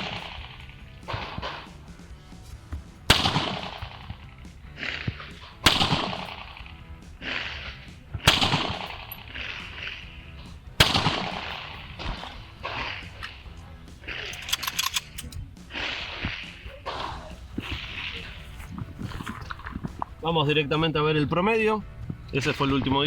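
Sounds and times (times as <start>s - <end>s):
gunshots with ringing tail: 0.0s - 1.7s, 3.0s - 14.8s, 15.7s - 18.2s.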